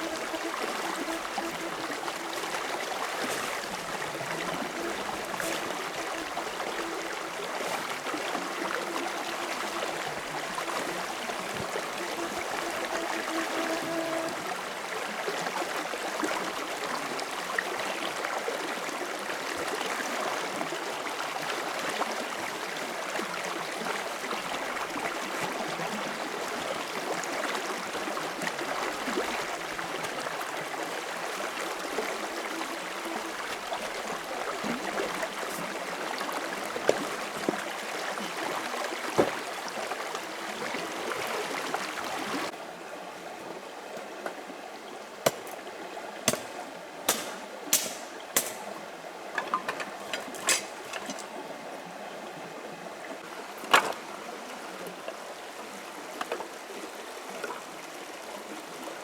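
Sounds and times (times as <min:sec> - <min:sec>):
running water rushing: 0:00.0 - 0:58.9
sharp knocks: 0:46.3 - 0:46.5, 0:47.1 - 0:48.7.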